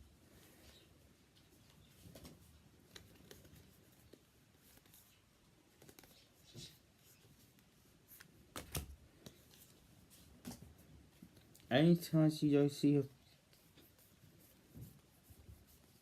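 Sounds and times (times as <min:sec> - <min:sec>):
cards rustling: 0:02.0 - 0:07.5, 0:08.1 - 0:11.7.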